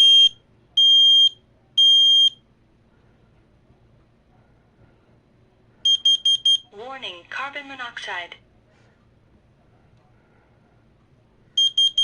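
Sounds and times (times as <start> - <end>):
smoke alarm beeping: 0.0 - 2.4, 5.8 - 6.7, 11.6 - 12.0.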